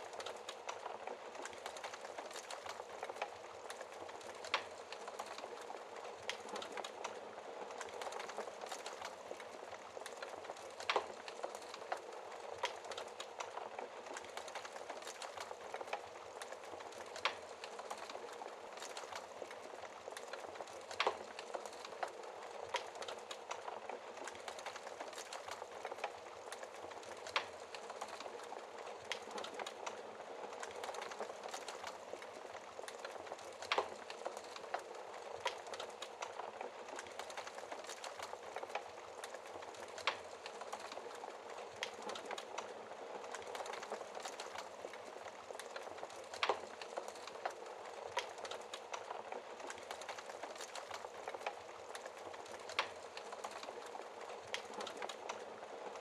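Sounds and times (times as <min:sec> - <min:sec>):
wood fire crackling: 0:00.0 - 0:56.0
fire pops: 0:07.8 - 0:19.2, 0:30.6 - 0:55.4.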